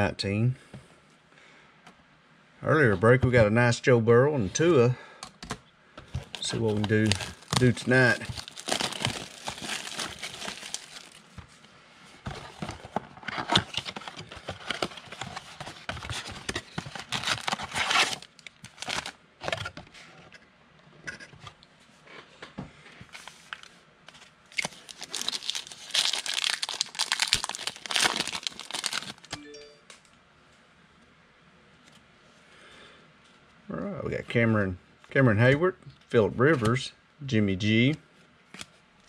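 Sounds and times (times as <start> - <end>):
plastic wrappers tearing and crinkling: 6.2 - 11.4, 12.5 - 19.6, 23.2 - 29.4.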